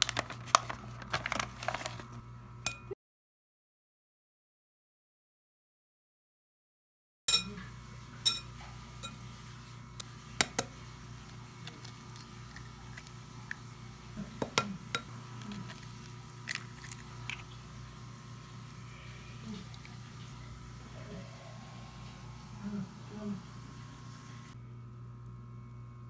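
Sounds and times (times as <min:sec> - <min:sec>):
steady low hum: 0:07.3 - 0:26.0
dishes and utensils clinking: 0:14.4 - 0:17.4.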